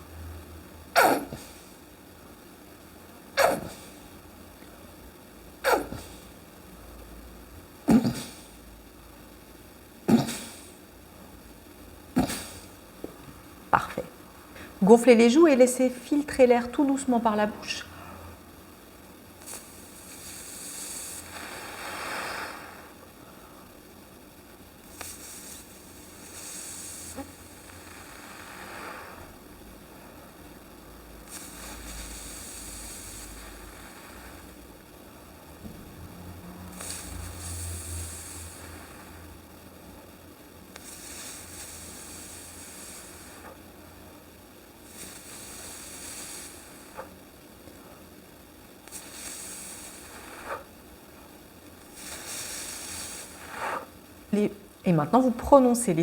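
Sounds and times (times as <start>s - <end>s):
breath hissing through pursed lips: 1.0s - 2.0s, 3.4s - 4.8s, 5.6s - 6.4s, 7.9s - 8.8s, 10.0s - 11.0s, 12.1s - 14.9s, 19.4s - 23.9s, 24.8s - 30.5s, 31.2s - 39.5s, 40.7s - 48.0s, 48.8s - 54.8s.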